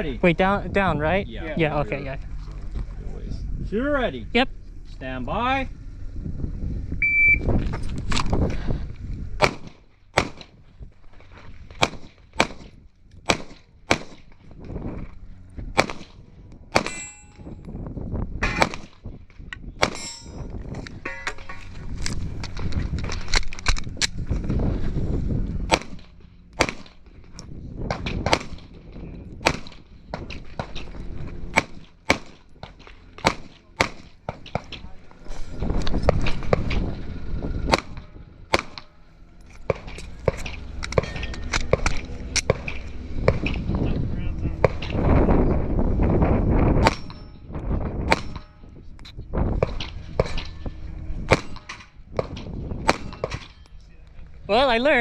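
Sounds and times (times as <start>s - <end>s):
low rumbling movement noise: 0.0s - 55.0s
handgun shots: 9.4s - 10.5s, 11.8s - 14.2s, 15.8s - 16.1s, 16.7s - 17.1s, 19.8s - 20.1s, 25.7s - 27.0s, 28.1s - 28.7s, 29.4s - 29.8s, 33.2s - 34.7s, 37.7s - 38.9s, 46.8s - 47.2s, 48.1s - 48.5s
metallic clang and ring: 16.8s - 17.7s, 19.9s - 21.7s, 40.9s - 41.6s, 46.8s - 47.5s.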